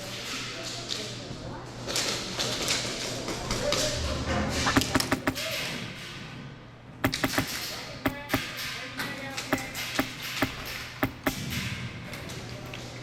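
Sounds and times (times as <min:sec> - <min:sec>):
pellets striking: 0:04.7 - 0:05.5, 0:07.0 - 0:08.6, 0:09.5 - 0:11.5
airsoft guns firing: 0:04.7 - 0:05.6, 0:07.0 - 0:08.7, 0:09.5 - 0:11.6.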